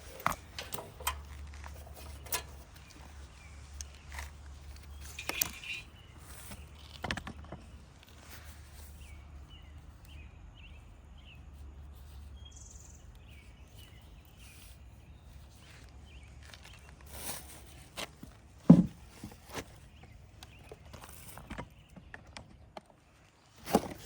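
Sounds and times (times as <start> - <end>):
dull thump: 18.7 - 19.4.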